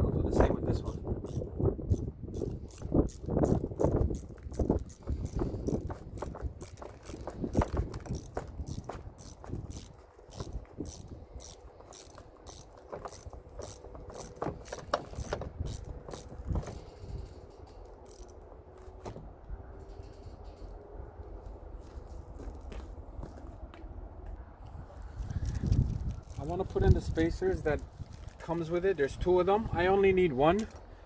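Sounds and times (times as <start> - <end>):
ratchet wrench clicking: 0.8 - 18.4.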